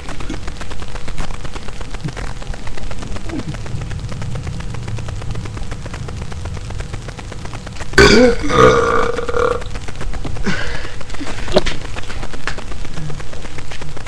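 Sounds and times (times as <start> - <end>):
man burping: 8.0 - 9.5.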